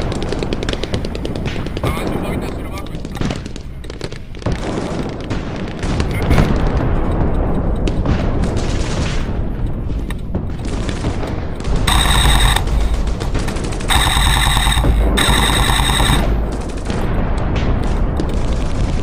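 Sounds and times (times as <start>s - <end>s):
airsoft gun full-auto bursts: 11.9s - 16.8s.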